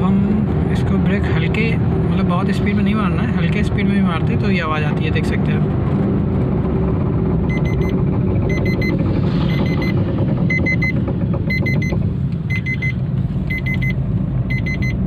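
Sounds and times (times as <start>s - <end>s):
car rumbling from inside cabin: 0.0s - 15.0s
warning chime beeping: 7.5s - 15.0s.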